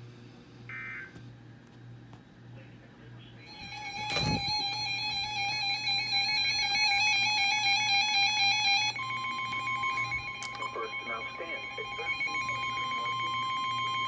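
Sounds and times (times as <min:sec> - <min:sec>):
fluttering electronic tones: 0:03.4 - 0:14.0.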